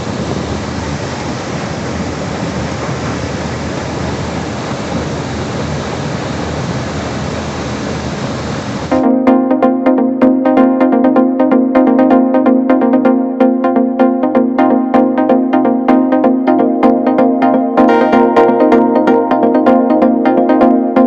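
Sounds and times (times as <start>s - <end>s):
electronic music with beat: 8.9s - 21.0s.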